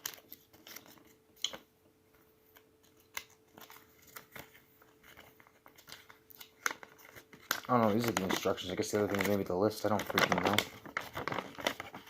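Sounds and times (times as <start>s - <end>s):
faint steady hum: 0.0s - 12.0s
paper leaflets rustling: 2.8s - 12.0s.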